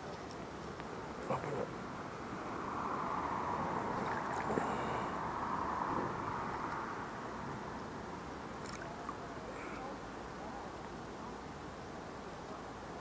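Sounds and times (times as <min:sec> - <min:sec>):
river water rushing: 0:00.4 - 0:12.1.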